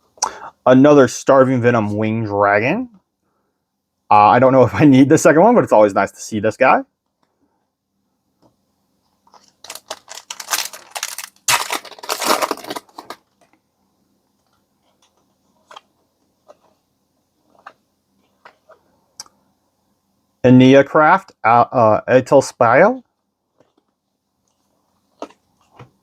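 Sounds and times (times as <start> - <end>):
foil wrapper tearing and crinkling: 9.3 - 13.2.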